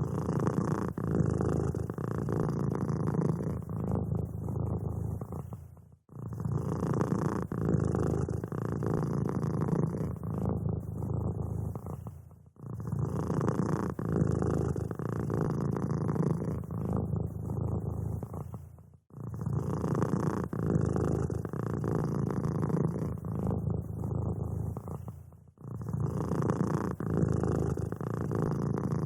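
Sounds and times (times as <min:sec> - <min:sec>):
cat purring: 0:00.0 - 0:29.0.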